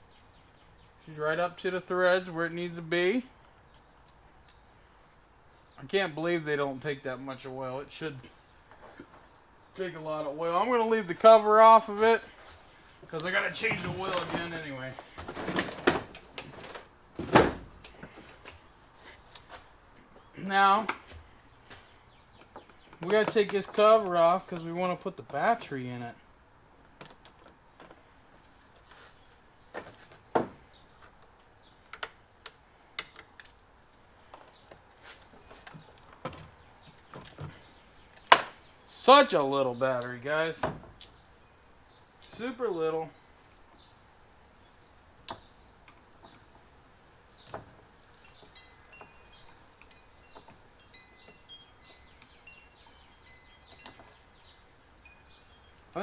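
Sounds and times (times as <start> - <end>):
wind chimes tinkling: 48.2 - 56.0.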